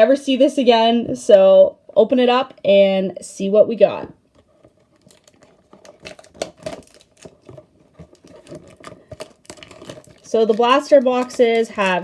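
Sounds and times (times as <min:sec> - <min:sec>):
card packs crinkling and clicking: 0:04.6 - 0:12.0.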